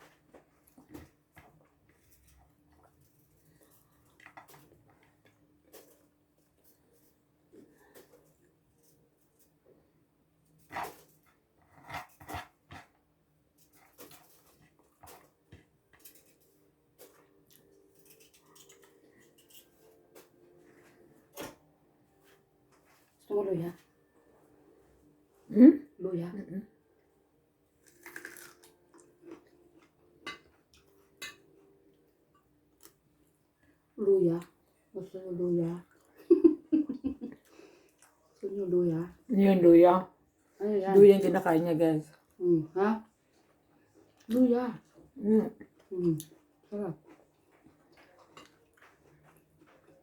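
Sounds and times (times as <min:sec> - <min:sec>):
cutlery and dishes clicking: 0:18.0 - 0:20.3.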